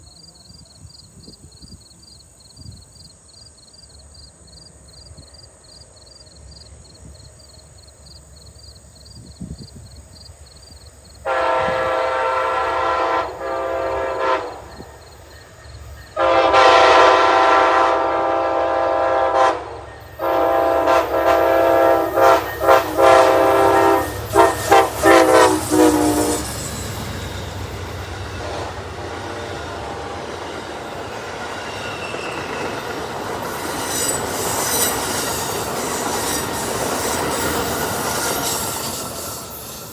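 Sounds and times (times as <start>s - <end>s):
passing train rumble: 4.4s - 39.9s
locomotive air horn blasts: 11.2s - 14.9s, 16.2s - 30.2s.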